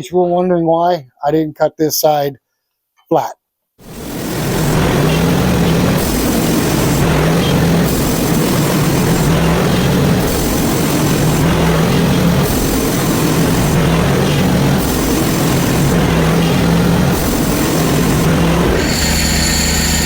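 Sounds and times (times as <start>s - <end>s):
sawmill engine humming: 13.1s - 20.0s.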